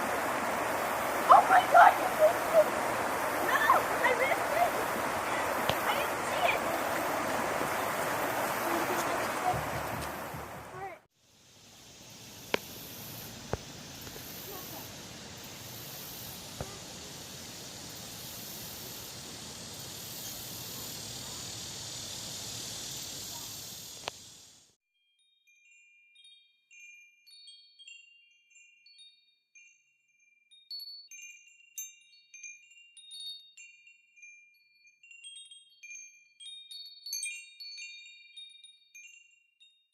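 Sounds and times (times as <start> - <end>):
rushing water: 0.0 - 24.6
wind chimes tinkling: 25.0 - 39.9.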